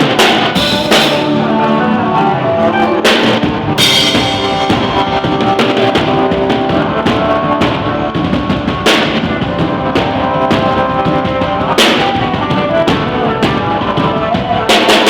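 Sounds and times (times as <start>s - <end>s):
cymbal crash: 0.0s - 1.9s, 3.0s - 6.6s
live band playing: 0.0s - 15.0s.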